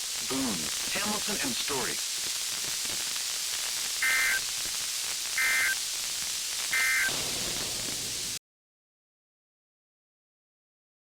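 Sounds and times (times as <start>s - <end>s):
radio static hiss: 0.0s - 8.4s
two-tone digital data bursts: 3.8s - 4.6s, 5.3s - 5.9s, 6.6s - 7.2s.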